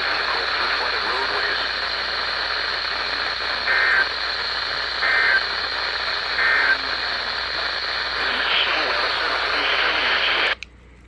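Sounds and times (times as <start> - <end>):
radio reception hiss: 0.0 - 10.6.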